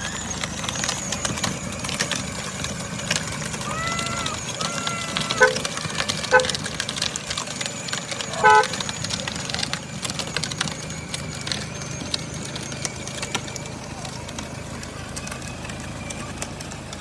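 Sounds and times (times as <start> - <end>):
crackly background noise: 0.0 - 17.0
toy car horn beeps: 3.6 - 6.9, 8.1 - 9.2.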